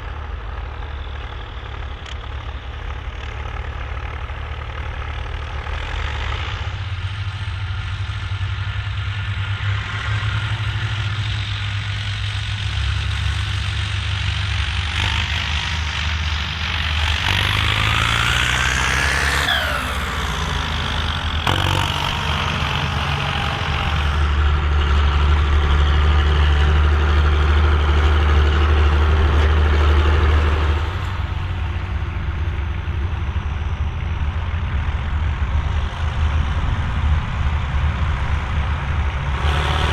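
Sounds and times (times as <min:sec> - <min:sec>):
tractor diesel engine running: 0:00.0 - 0:39.9
gliding whine: 0:16.6 - 0:25.8.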